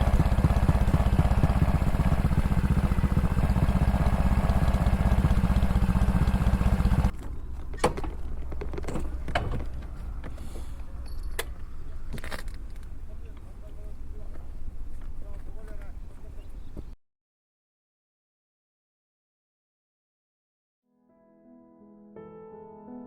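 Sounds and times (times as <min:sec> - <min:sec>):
motorcycle engine running: 0:00.0 - 0:07.2.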